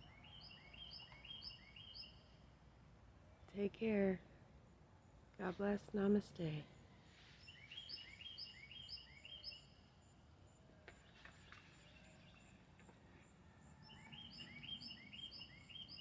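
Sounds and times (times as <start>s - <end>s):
small bird singing faintly: 0.0s - 2.4s, 6.7s - 16.0s.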